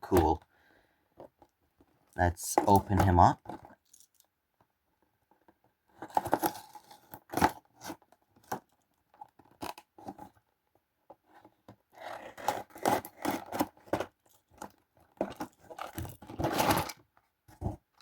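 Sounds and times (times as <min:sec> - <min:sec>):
cardboard packaging tearing and crinkling: 0:06.0 - 0:08.6, 0:12.0 - 0:17.0.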